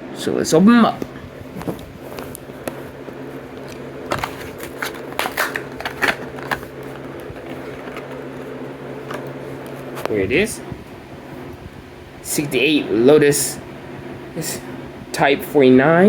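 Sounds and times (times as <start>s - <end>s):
plastic packaging crackling: 1.4s - 10.1s.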